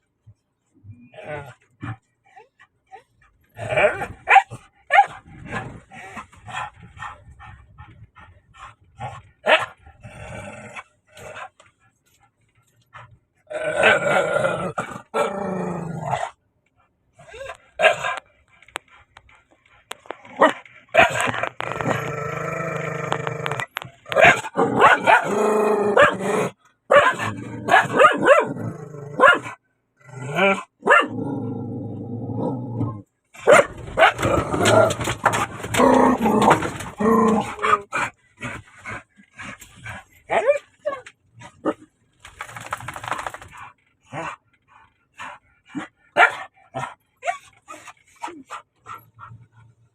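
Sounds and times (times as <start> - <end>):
dog barking: 4.3 - 5.2, 9.4 - 9.8, 17.8 - 18.2, 24.1 - 25.3, 26.0 - 26.2, 26.9 - 28.6, 29.2 - 29.6, 30.8 - 31.1, 33.4 - 34.3, 46.2 - 46.5.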